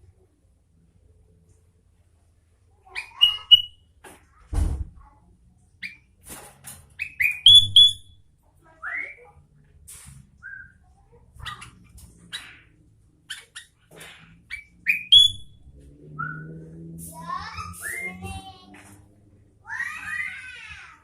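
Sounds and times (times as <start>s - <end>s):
bird whistled notes and chirps: 3.0s - 3.8s, 7.0s - 8.2s, 10.4s - 10.8s, 14.5s - 15.6s, 16.2s - 16.6s, 17.8s - 18.3s.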